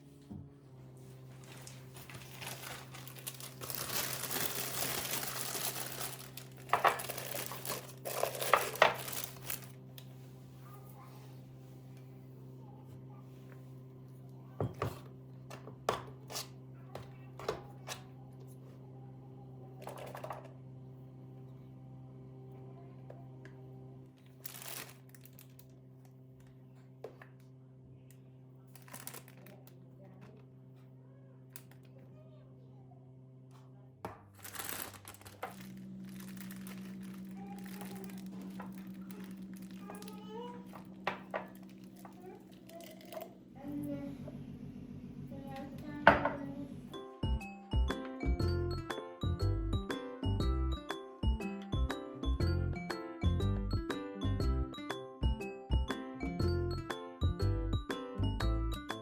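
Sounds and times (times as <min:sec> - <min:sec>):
steady low hum: 0:00.0 - 0:49.9
material crinkling: 0:01.4 - 0:09.8, 0:24.4 - 0:25.6, 0:28.7 - 0:29.7, 0:34.4 - 0:43.4.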